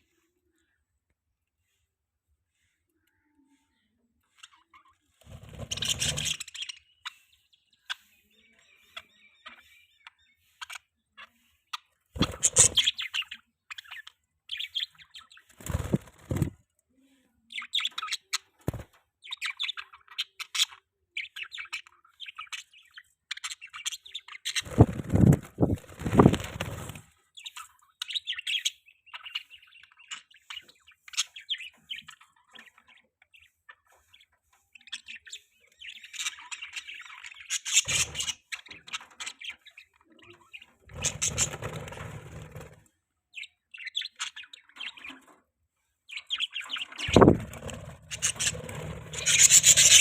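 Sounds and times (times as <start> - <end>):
budgerigars chirping: 4.4 - 16.5, 34.8 - 42.1, 46.1 - 50.0
wings flapping: 5.2 - 6.4, 12.2 - 12.9, 15.5 - 16.6, 18.7 - 18.9, 24.6 - 27.1, 40.9 - 42.9, 47.0 - 50.0.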